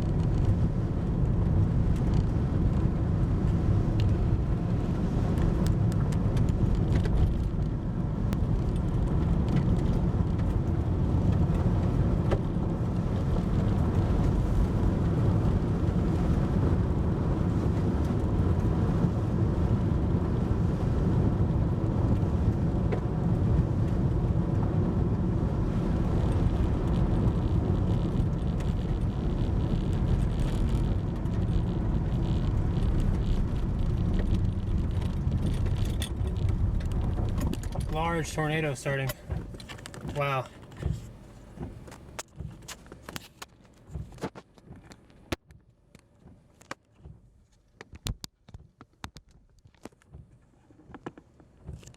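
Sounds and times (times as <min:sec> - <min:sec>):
car road and engine rumble: 0:00.0 - 0:51.9.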